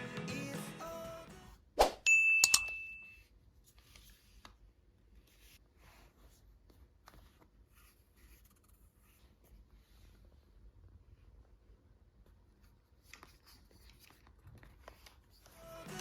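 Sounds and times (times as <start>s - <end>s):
bright ringing ding: 2.1s - 3.2s.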